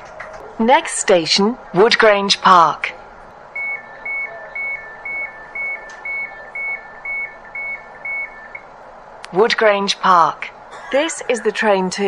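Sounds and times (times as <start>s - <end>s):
train noise: 0.0s - 12.0s
two-tone door warning beeps: 3.5s - 8.7s.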